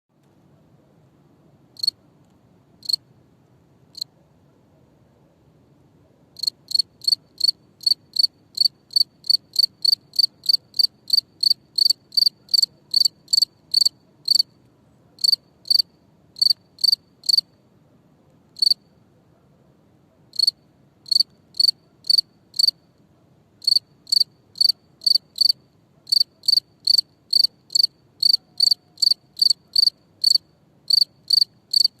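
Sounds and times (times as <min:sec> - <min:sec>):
cricket chirping: 0:01.8 - 0:02.0, 0:02.8 - 0:03.1, 0:06.4 - 0:14.6, 0:15.2 - 0:17.6, 0:18.6 - 0:19.0, 0:20.3 - 0:22.9, 0:23.6 - 0:32.0.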